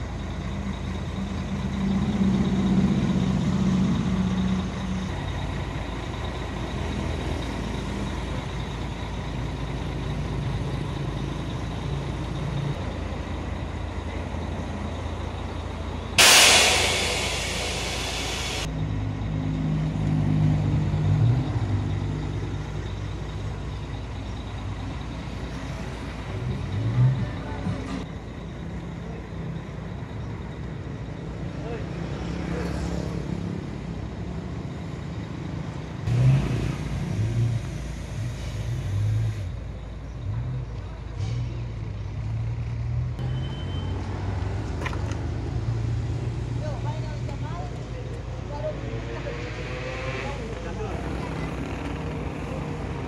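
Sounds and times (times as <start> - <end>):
air brakes hissing: 16.2 - 18.7, 37.5 - 39.7.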